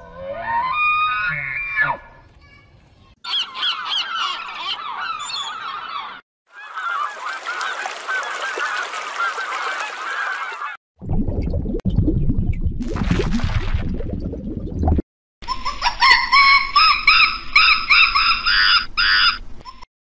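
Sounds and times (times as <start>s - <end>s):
waterfowl honking: 3.3s - 10.8s
low rumbling noise: 11.0s - 13.0s.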